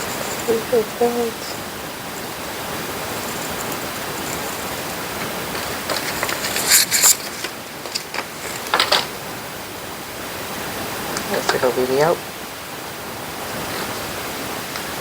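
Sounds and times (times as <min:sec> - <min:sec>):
steady hiss: 0:00.0 - 0:15.0
plastic packaging crinkling: 0:03.3 - 0:09.2.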